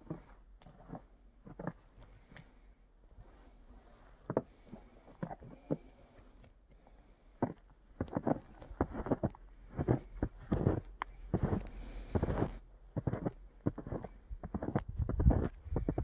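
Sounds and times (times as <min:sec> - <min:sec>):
footsteps crunching in snow: 0:07.4 - 0:16.0.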